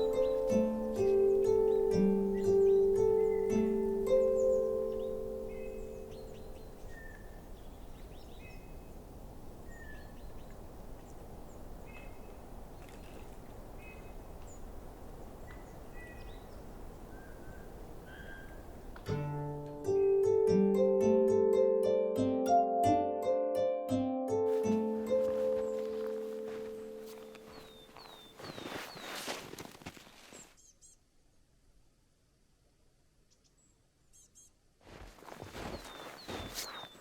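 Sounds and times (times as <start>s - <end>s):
plucked-string music: 0.0s - 6.6s, 19.0s - 27.8s
faint bird calls chirping: 0.0s - 9.0s, 15.3s - 19.0s, 25.4s - 29.5s, 35.6s - 37.0s.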